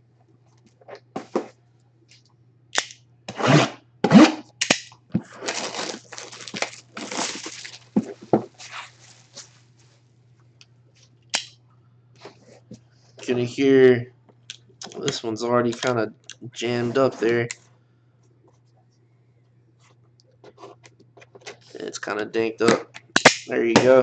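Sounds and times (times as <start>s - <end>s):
cardboard and wrapping ripping: 5.2s - 9.4s.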